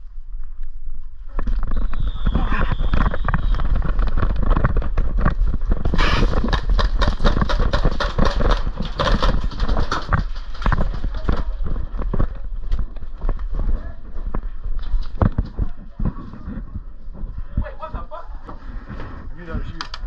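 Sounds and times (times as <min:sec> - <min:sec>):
steady low rumble: 0:00.0 - 0:20.0
running footsteps: 0:00.3 - 0:20.0
microphone handling noise: 0:01.1 - 0:20.0
gear rattling: 0:03.2 - 0:12.4.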